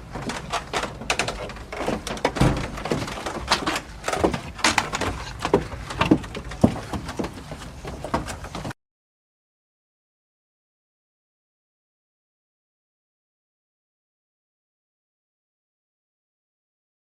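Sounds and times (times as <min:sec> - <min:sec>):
wooden stairs creaking: 0:00.0 - 0:08.8.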